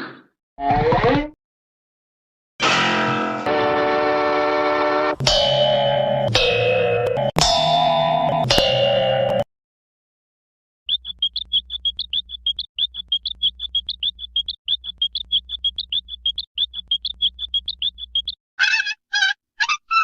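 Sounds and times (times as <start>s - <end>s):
cartoon high chirps: 10.9s - 20.0s.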